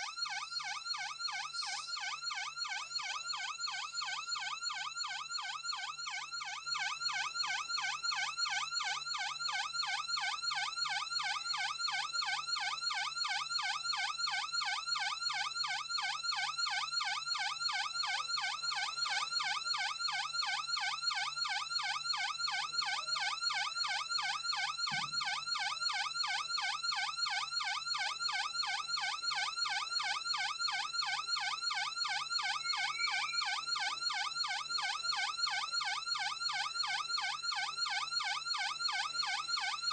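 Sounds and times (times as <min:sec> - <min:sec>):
police siren yelping: 0:32.1 - 0:34.3.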